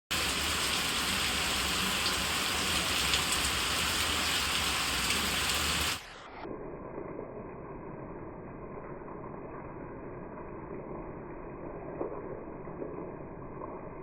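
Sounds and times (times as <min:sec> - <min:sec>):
steady rain falling: 0:00.1 - 0:06.3.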